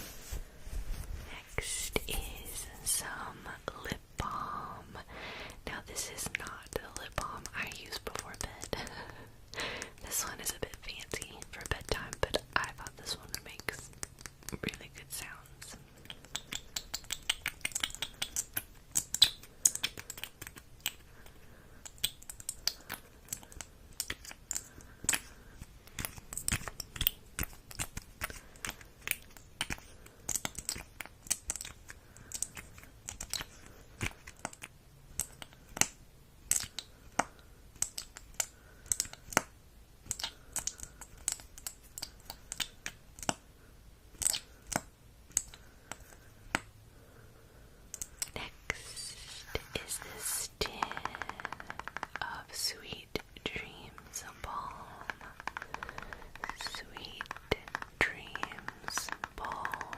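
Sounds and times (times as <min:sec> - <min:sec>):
crisp handling clicks and crackles: 0:47.9 - 0:59.9.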